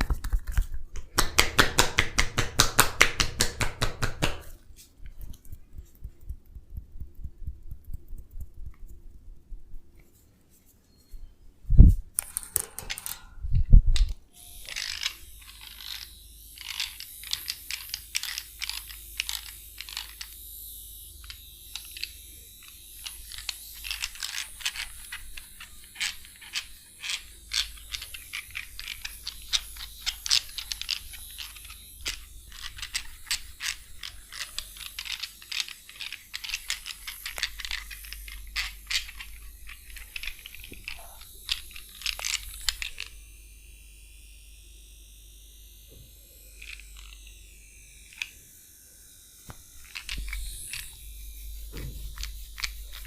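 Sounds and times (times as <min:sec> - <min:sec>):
hair crackling: 0:14.0 - 0:43.3, 0:49.6 - 0:53.0.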